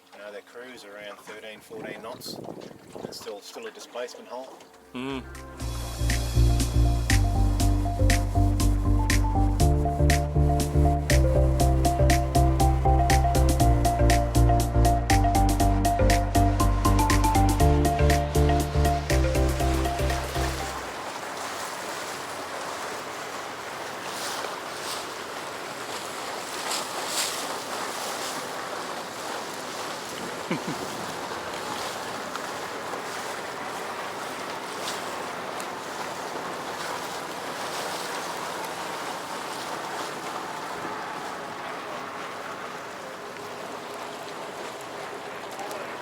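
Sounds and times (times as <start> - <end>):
wind and water rushing: 0.0 - 46.0
wind buffeting microphone: 1.7 - 3.2.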